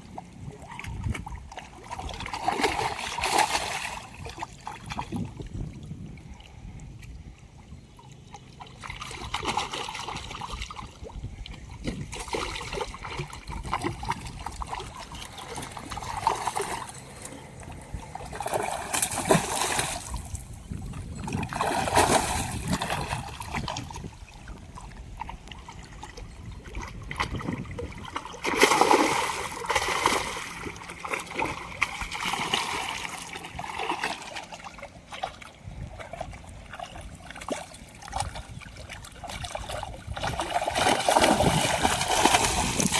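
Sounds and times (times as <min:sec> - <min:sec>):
water splashing and sloshing: 0:00.0 - 0:42.9.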